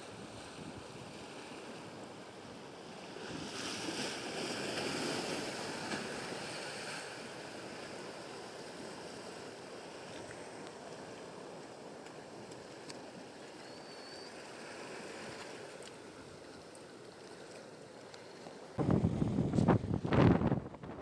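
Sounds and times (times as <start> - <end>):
sea surf washing ashore: 0.0 - 20.9
wind buffeting microphone: 18.8 - 21.0.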